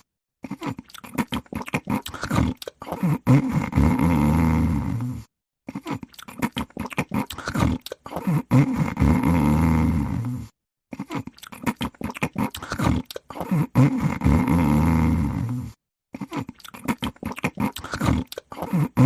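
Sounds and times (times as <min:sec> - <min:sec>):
dog snoring: 0:02.0 - 0:05.9, 0:07.4 - 0:11.2, 0:12.2 - 0:16.4.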